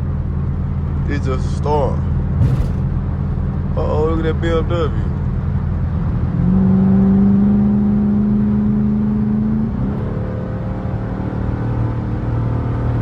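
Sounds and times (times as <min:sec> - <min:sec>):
car engine rumbling: 0:01.6 - 0:05.8.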